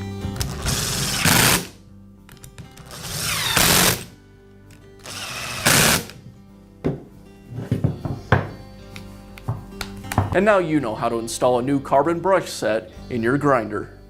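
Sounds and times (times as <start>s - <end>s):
background music: 0.0s - 14.0s
small power tool motor: 5.1s - 6.1s.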